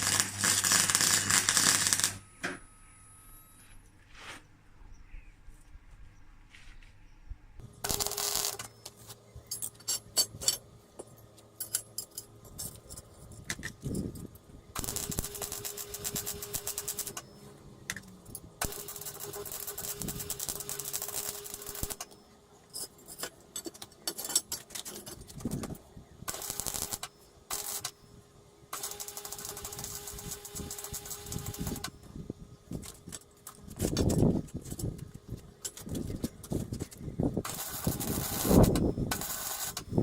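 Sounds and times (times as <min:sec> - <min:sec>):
arc welding crackle: 0:00.0 - 0:02.2, 0:07.7 - 0:09.2, 0:14.7 - 0:17.4, 0:18.6 - 0:22.2, 0:25.3 - 0:28.0, 0:28.7 - 0:32.0, 0:35.7 - 0:40.0
welder hum: 0:00.0 - 0:03.7, 0:07.6 - 0:09.2, 0:14.6 - 0:22.2, 0:25.4 - 0:33.0, 0:37.4 - 0:40.0.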